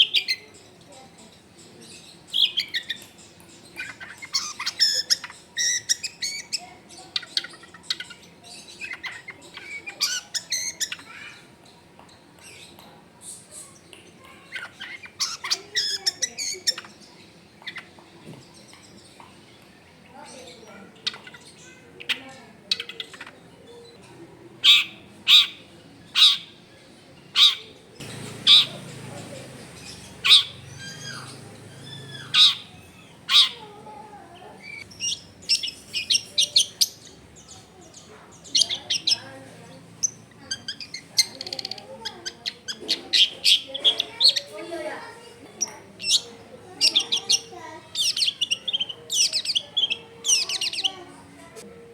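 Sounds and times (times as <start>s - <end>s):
shrike singing: 27.4s - 44.9s.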